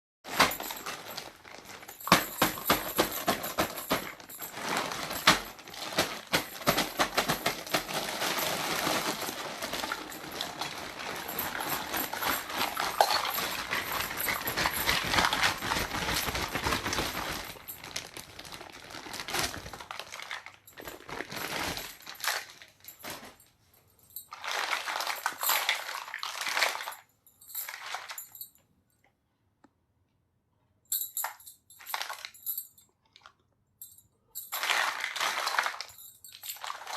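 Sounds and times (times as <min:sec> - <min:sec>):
plastic packaging crinkling: 0:00.3 - 0:23.5, 0:24.3 - 0:27.0, 0:34.6 - 0:36.9.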